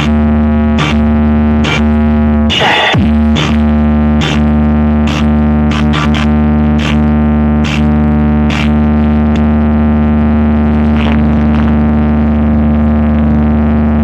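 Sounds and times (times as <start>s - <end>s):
deep bass note: 0.0s - 14.0s
synthesizer drone: 0.0s - 14.0s
sharp noisy hits: 2.5s - 7.0s.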